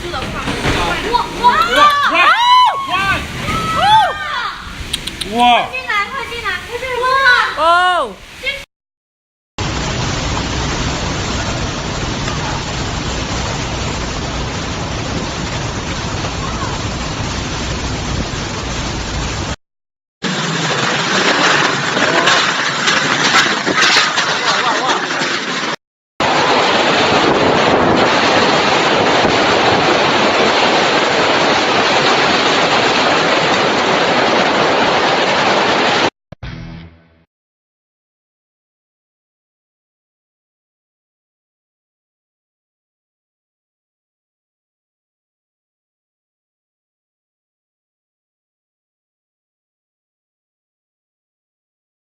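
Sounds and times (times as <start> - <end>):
strong wind: 0.0 - 8.6, 9.6 - 19.6, 25.3 - 36.1
driving rain: 0.0 - 8.7, 9.6 - 19.6, 20.2 - 36.1.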